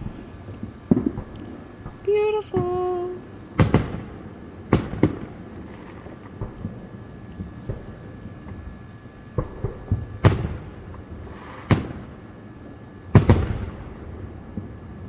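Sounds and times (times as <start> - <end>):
fireworks bursting: 2.0 - 3.2.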